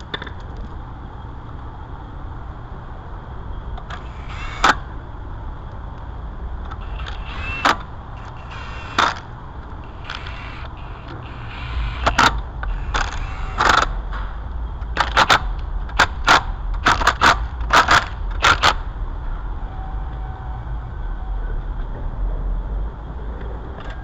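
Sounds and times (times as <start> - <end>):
steady low rumble: 0.0 - 24.0
tools clicking and clanking: 6.6 - 18.8.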